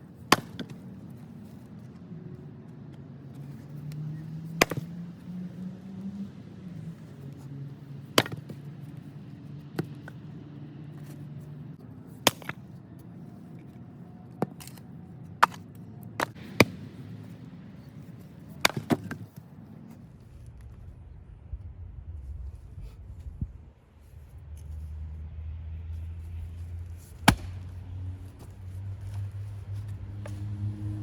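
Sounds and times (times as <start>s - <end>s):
axe chopping firewood: 0.3s - 0.8s, 4.6s - 4.9s, 8.2s - 8.6s, 12.2s - 12.6s, 16.2s - 16.8s, 18.6s - 19.3s, 27.0s - 27.7s.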